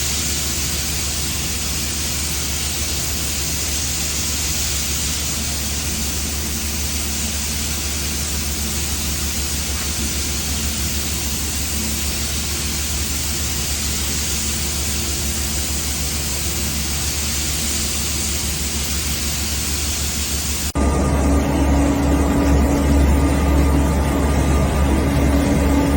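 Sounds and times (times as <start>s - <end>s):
pressure washer spraying: 0.0s - 20.8s
machine steady tone: 0.0s - 25.9s.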